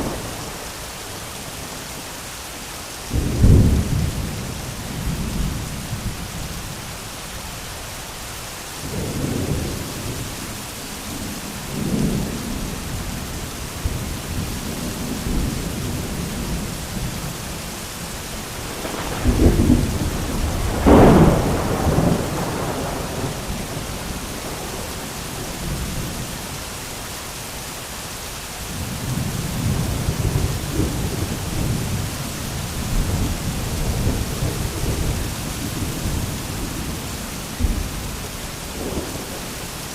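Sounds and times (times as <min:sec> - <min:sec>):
heavy rain: 0:00.0 - 0:39.9
thunder rumbling: 0:13.8 - 0:26.3, 0:28.7 - 0:39.9.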